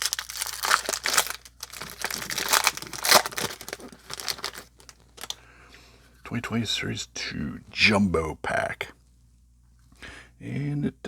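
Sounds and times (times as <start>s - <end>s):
wrapper torn and crinkled: 0.0s - 5.4s.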